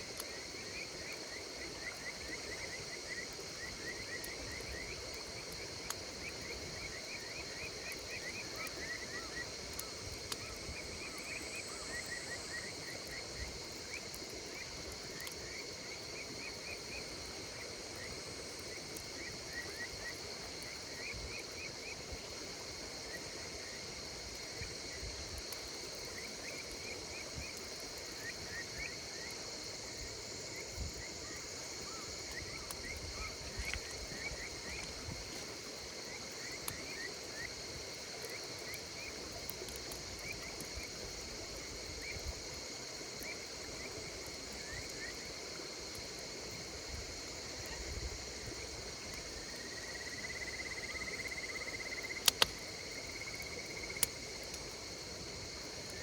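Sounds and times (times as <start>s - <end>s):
campfire crackling: 0.0s - 56.0s
insects trilling and chirping: 0.0s - 56.0s.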